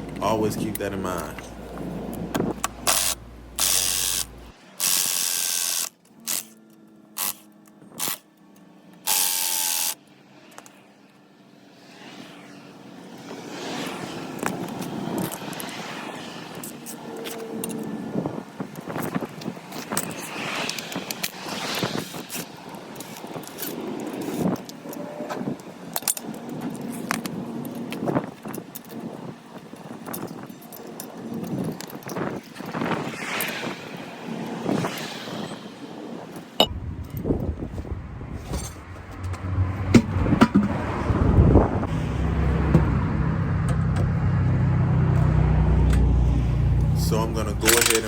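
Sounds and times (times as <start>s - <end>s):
wrench ratcheting: 2.6s - 6.6s, 9.1s - 10.0s, 47.6s - 48.0s.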